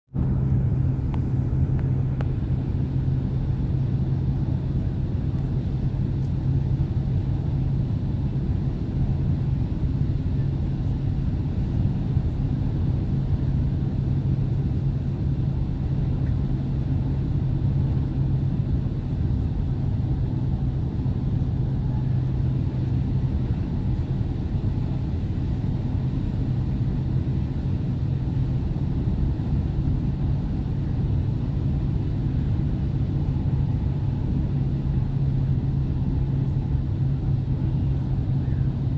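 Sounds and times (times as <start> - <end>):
airliner cabin drone: 0.1 - 38.9.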